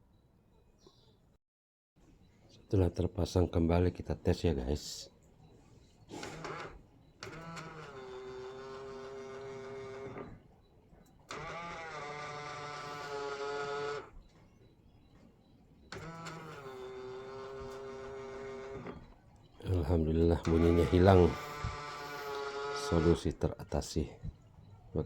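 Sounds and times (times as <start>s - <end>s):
mirror motor whine: 5.5s - 10.5s, 11.2s - 14.8s, 15.4s - 23.5s.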